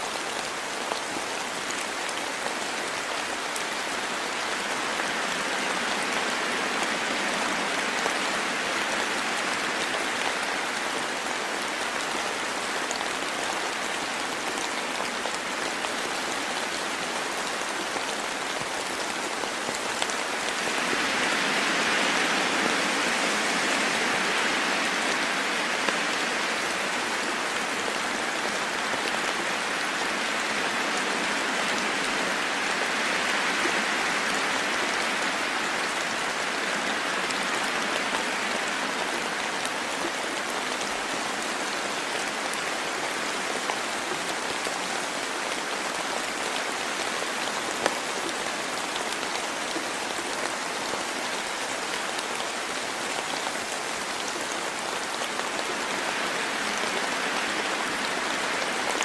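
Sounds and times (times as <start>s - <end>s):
rain falling in a forest: 0.0s - 59.0s.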